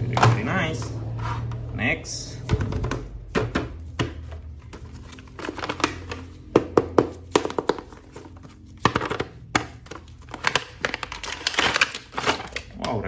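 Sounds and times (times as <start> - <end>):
plastic packaging crinkling: 4.5 - 6.5, 7.1 - 13.0.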